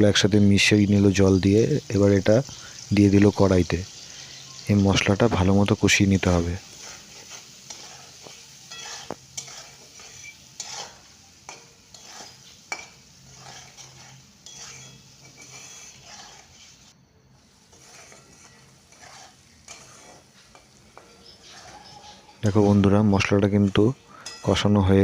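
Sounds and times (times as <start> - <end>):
paste sizzling in oil: 0.0 - 25.0
spatula scraping pan: 6.2 - 24.8
spatula clinking against pan: 7.6 - 16.5, 17.7 - 22.4, 23.7 - 24.8.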